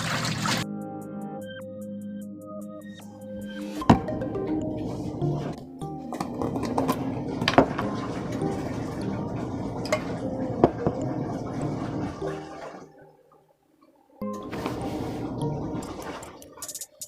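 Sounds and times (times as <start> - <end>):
washing machine sloshing water: 0.0 - 0.6, 6.5 - 13.2, 14.4 - 17.0.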